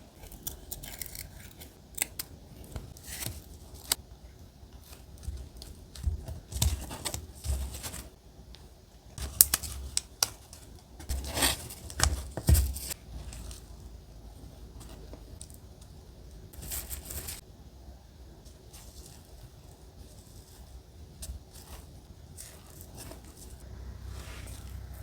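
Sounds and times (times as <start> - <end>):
paper rustling: 9.2 - 13.8.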